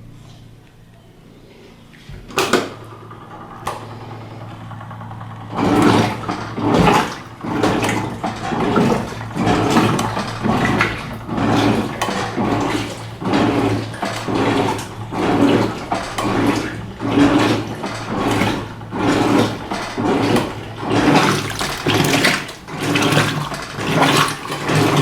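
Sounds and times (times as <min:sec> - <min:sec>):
washing machine motor hum: 0:00.0 - 0:25.0
water sloshing: 0:01.8 - 0:25.0.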